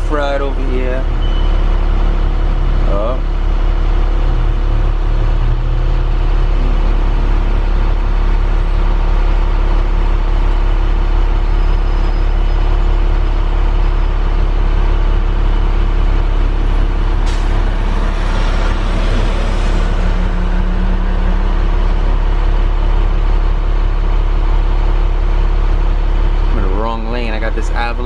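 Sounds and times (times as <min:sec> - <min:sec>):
vehicle engine and road noise: 0:00.0 - 0:28.0.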